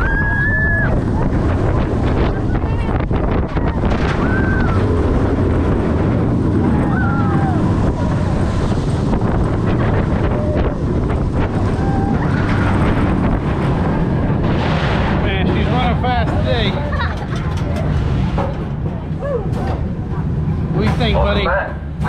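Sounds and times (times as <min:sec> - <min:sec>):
roller coaster train rumble: 0:00.0 - 0:22.0
wind rushing over microphone: 0:00.0 - 0:22.0.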